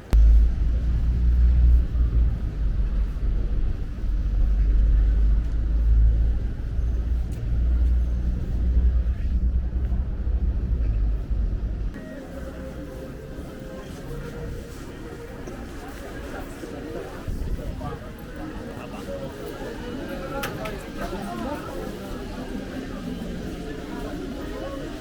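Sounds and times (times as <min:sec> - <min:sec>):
wind buffeting microphone: 0:14.2 - 0:18.9.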